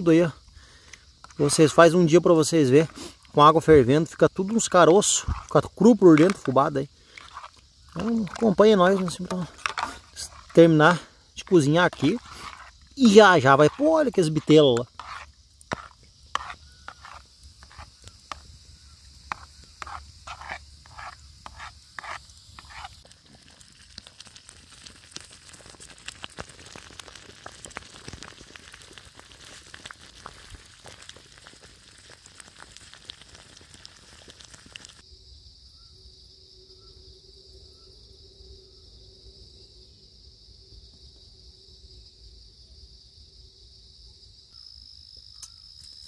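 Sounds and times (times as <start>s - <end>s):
campfire crackling: 0.0s - 35.0s
night insects chirping: 0.0s - 46.0s.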